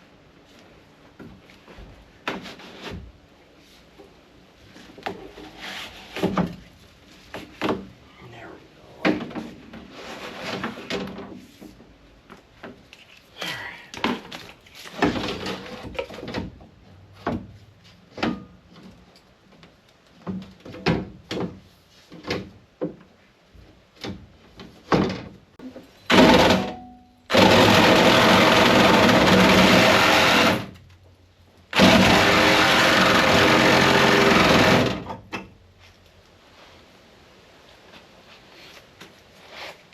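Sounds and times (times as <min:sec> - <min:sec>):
power tool cutting metal: 0:27.3 - 0:30.7, 0:31.8 - 0:35.1.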